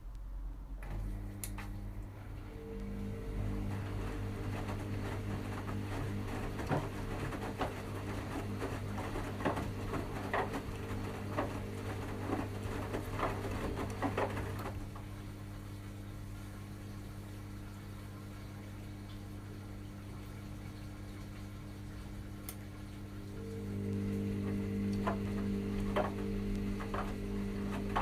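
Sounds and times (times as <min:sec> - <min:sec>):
washing machine motor humming: 0:00.6 - 0:28.0
wet laundry slapping in drum: 0:03.2 - 0:15.2, 0:23.4 - 0:28.0.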